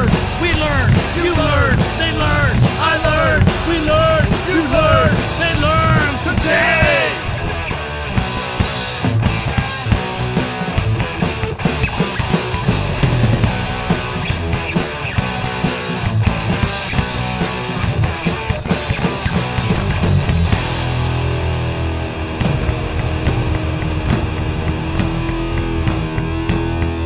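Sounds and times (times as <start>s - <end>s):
drum kit striking: 0.0s - 7.5s, 22.4s - 27.0s
rock band playing instrumental: 0.0s - 27.0s.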